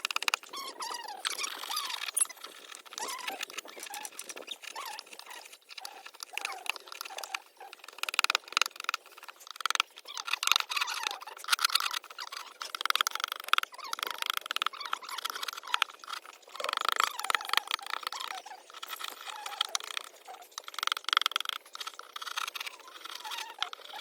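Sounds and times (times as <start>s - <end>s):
short squeaky chirps: 0.5s - 5.5s.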